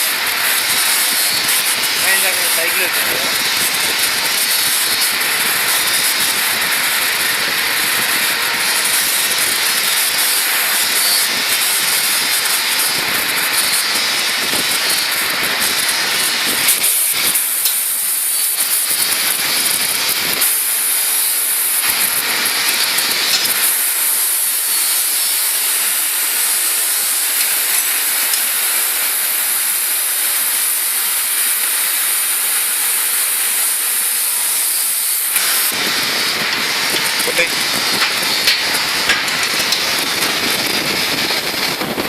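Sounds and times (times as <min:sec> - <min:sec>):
cutting torch hissing: 0:00.0 - 0:42.0.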